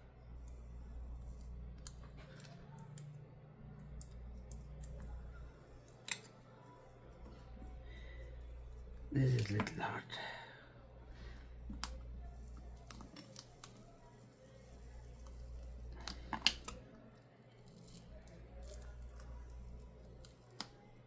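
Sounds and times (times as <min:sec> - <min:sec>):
small plastic and metal clicks: 0:03.8 - 0:06.8, 0:15.2 - 0:20.9.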